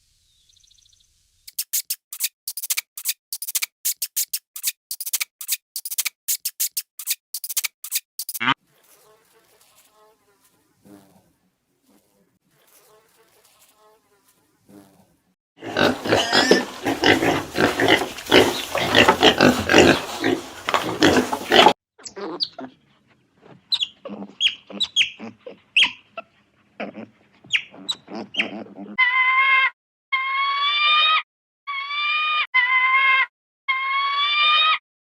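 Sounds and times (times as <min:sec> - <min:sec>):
pigs squealing and grunting: 0:15.6 - 0:22.8, 0:23.4 - 0:26.0, 0:26.8 - 0:31.2.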